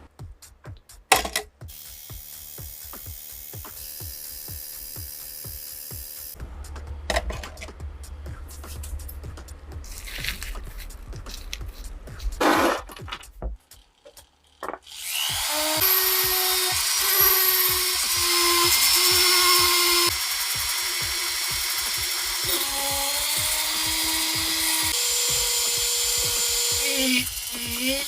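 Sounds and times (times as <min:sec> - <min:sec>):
electric drill running: 0:01.7 - 0:06.4, 0:14.1 - 0:28.0.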